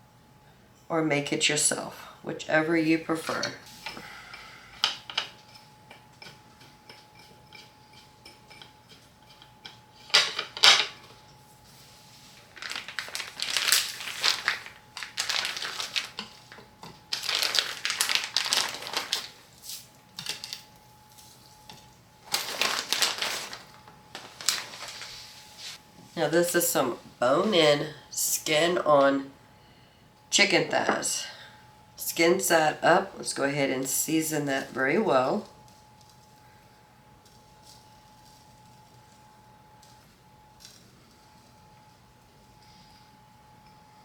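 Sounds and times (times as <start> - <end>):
faint steady hum: 0.0 - 44.0
utensils and dishes clinking: 3.3 - 11.4.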